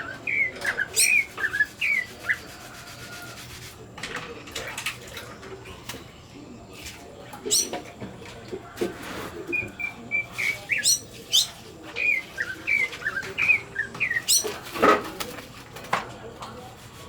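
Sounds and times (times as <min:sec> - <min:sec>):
bird singing whistled notes: 0:00.0 - 0:02.4, 0:09.6 - 0:14.5.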